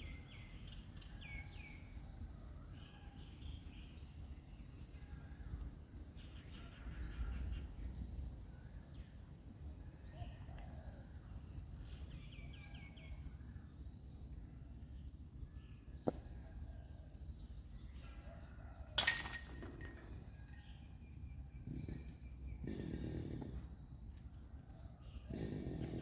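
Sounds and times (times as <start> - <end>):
disc hitting metal chains: 19.0 - 20.6.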